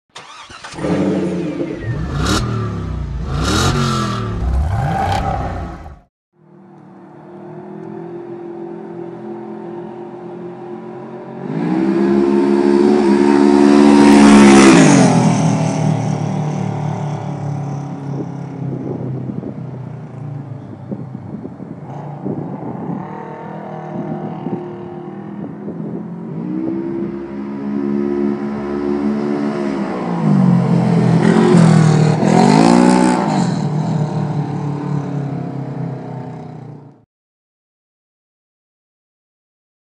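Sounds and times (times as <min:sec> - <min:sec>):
engine revving and idling: 0:00.2 - 0:06.1.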